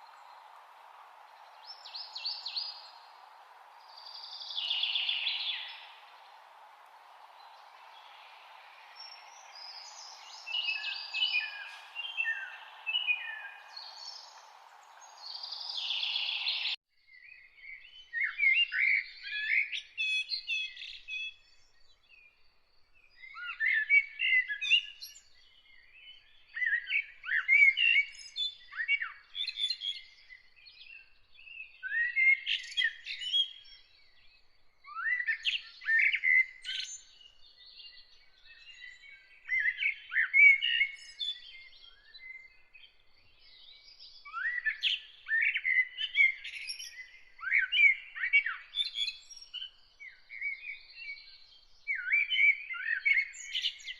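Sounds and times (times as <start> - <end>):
steady hiss: 0.0 - 16.7
songbirds chirping: 0.0 - 53.9.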